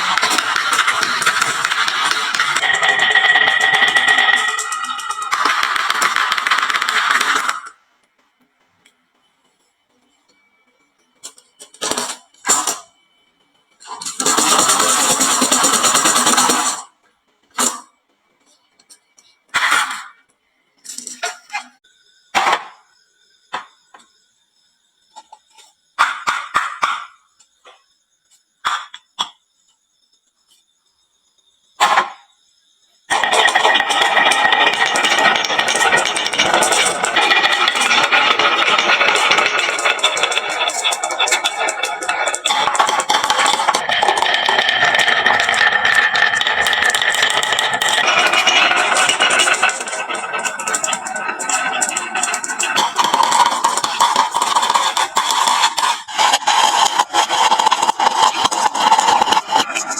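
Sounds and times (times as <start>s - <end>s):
marbles clacking on wooden run: 0.0s - 7.8s, 14.1s - 16.8s, 33.1s - 59.9s.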